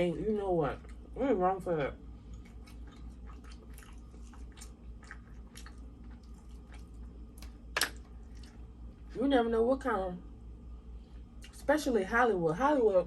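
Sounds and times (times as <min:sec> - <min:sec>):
low hum: 0:00.0 - 0:13.0
person chewing food: 0:02.2 - 0:09.1.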